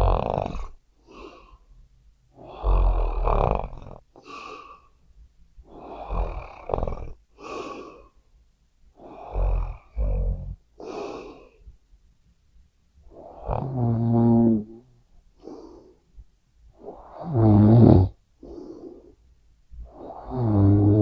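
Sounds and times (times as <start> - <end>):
person snoring loudly: 0.0 - 0.7, 2.4 - 4.0, 5.8 - 7.2, 13.2 - 15.6, 16.9 - 18.7, 19.9 - 21.0.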